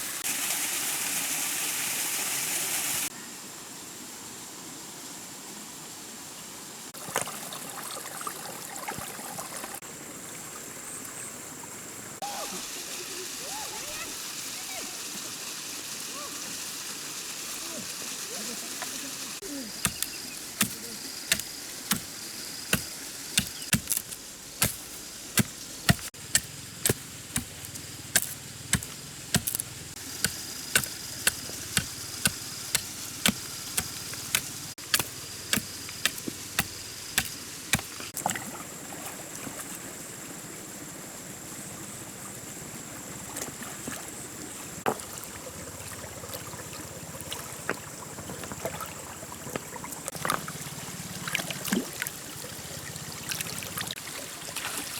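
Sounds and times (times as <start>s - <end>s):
running water hiss: 0.0s - 54.9s
chopping strikes: 19.8s - 38.1s.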